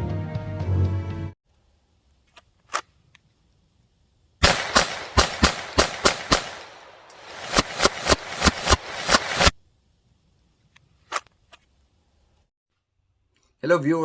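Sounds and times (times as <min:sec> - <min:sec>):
rapid handgun fire: 0:04.4 - 0:09.6.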